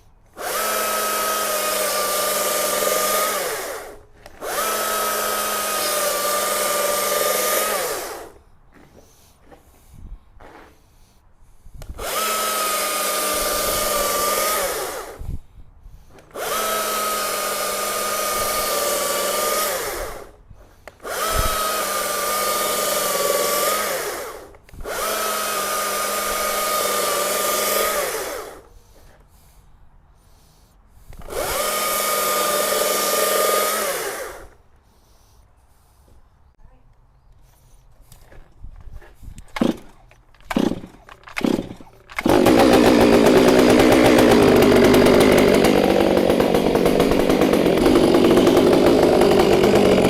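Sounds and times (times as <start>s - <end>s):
chainsaw cutting through log: 0.3s - 8.4s, 11.8s - 15.4s, 16.2s - 29.2s, 31.1s - 34.6s, 39.5s - 50.0s.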